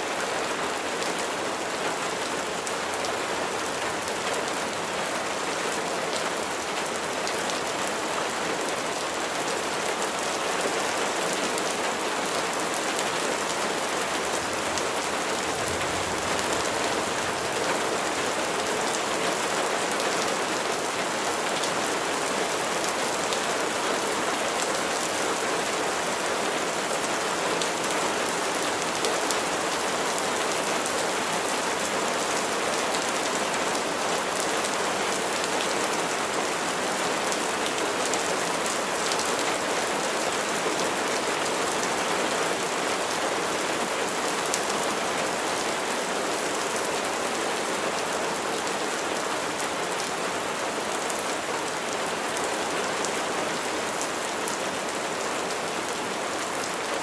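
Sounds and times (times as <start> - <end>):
steady rain falling: 0.0 - 57.0
raindrops pattering on a surface: 13.7 - 21.0.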